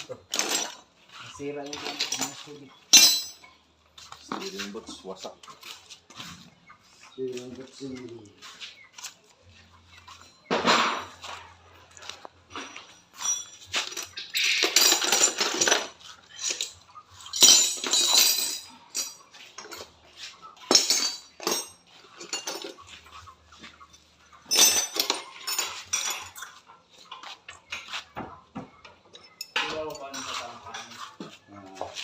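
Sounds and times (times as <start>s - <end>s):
metal tools clinking and clattering: 0.0s - 5.1s, 10.0s - 23.2s, 23.8s - 26.7s, 29.1s - 31.3s.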